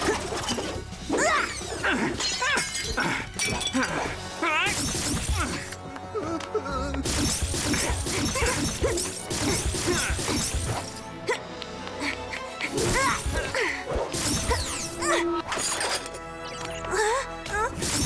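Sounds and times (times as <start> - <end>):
background music: 0.0 - 18.0.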